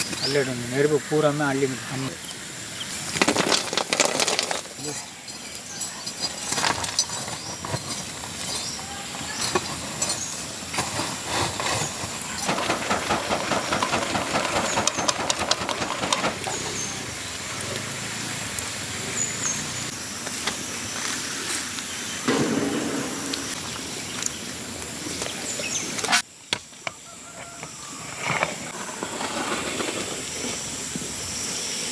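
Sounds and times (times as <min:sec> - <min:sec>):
firewood crackling: 0:01.6 - 0:21.2
embers being raked and scraped: 0:02.8 - 0:16.9.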